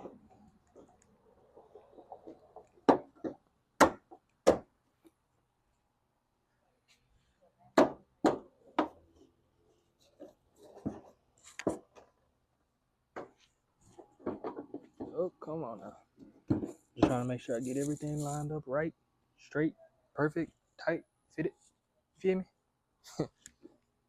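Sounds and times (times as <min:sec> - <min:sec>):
parts knocking and clicking: 0:13.1 - 0:15.2
handling rustle: 0:17.4 - 0:18.6.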